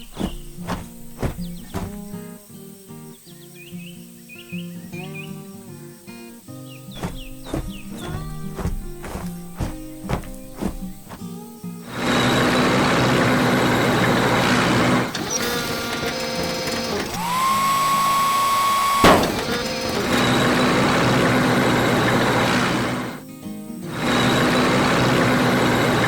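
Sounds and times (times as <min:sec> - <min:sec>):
mechanical whirring: 0:12.0 - 0:23.1.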